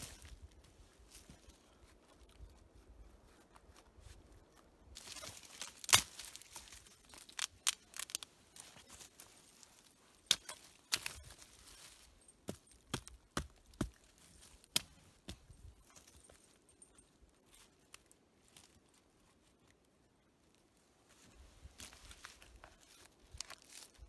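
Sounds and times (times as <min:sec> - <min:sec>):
brittle twigs rustling: 0:04.9 - 0:19.7, 0:21.2 - 0:24.0.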